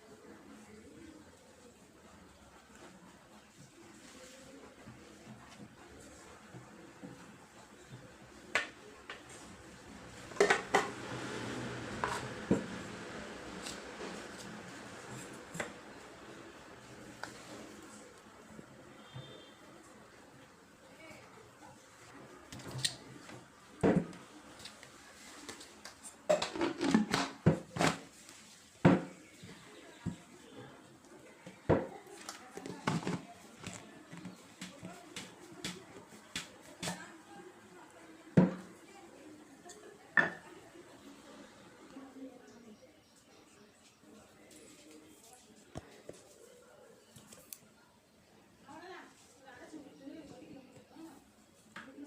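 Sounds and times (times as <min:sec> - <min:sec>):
kitchenware clinking and knocking: 0:10.3 - 0:11.0, 0:40.2 - 0:40.4.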